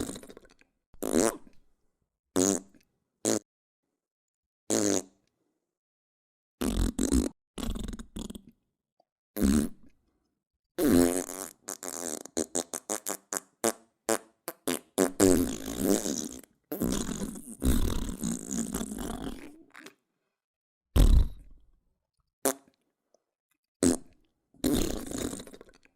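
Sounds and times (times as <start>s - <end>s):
fart sound effects: 6.6s - 8.4s, 10.8s - 19.6s, 21.0s - 21.5s, 23.8s - 25.6s.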